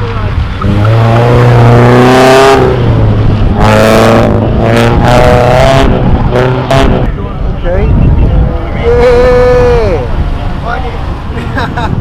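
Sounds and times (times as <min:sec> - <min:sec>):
car engine revving: 0:00.0 - 0:08.8.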